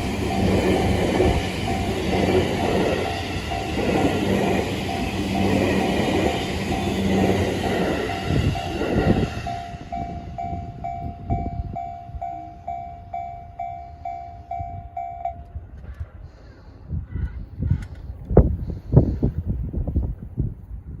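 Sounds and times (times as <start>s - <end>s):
crossing warning bell dinging: 0.0s - 15.8s
train wheels on rails: 0.0s - 16.4s.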